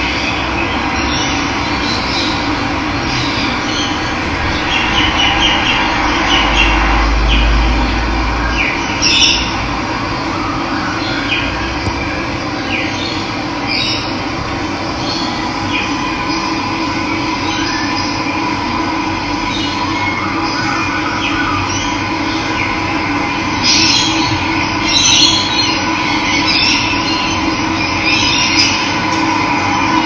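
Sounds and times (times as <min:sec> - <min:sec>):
birds chirping: 0:11.0 - 0:18.2.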